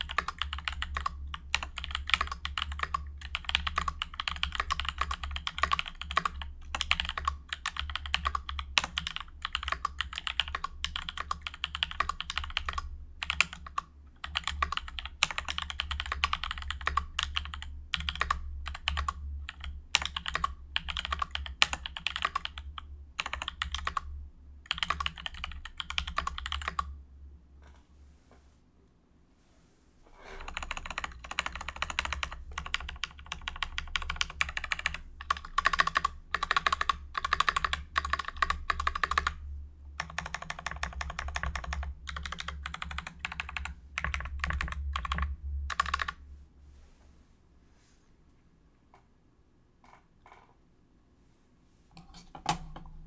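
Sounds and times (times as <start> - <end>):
mechanical keyboard typing: 0.0 - 24.1, 24.7 - 26.9, 30.4 - 39.4, 40.0 - 46.2.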